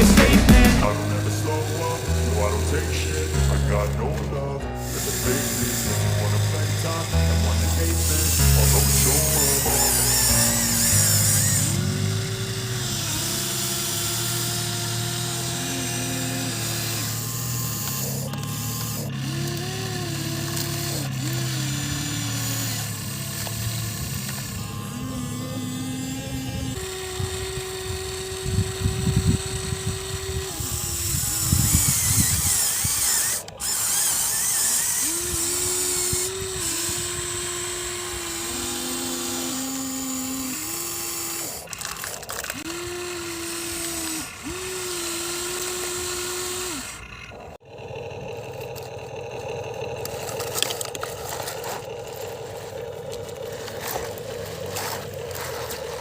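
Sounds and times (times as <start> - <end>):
toy excavator motors whining: 0.0 - 56.0.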